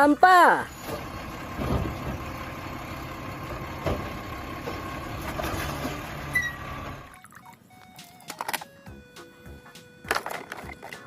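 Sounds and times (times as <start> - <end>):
garbage truck engine idling: 0.7 - 7.1.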